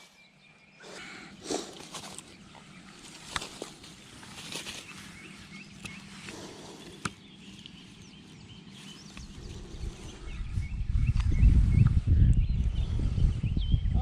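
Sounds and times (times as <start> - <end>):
small birds chirping: 0.0 - 14.0.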